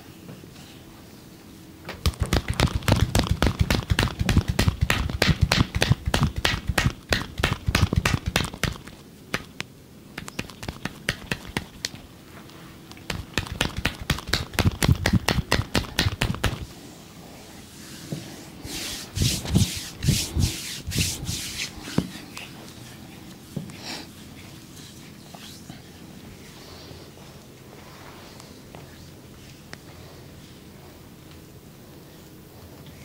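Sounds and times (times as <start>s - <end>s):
hands slapping body: 1.9s - 12.0s, 12.9s - 16.7s
rubbing hiss: 12.5s - 28.6s.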